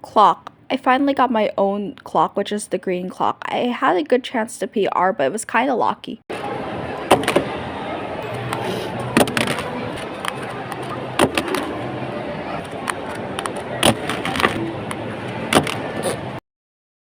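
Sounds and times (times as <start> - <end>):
murmur of crowd: 6.3 - 16.4.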